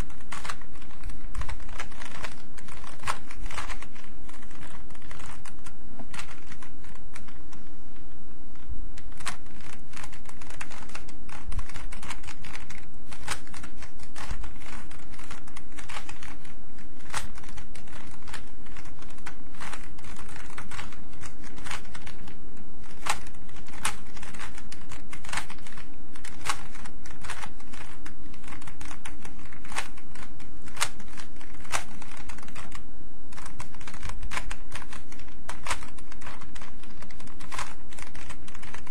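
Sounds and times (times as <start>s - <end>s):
steady low hum: 0.0s - 38.9s
plastic cube layers clicking: 9.0s - 38.9s.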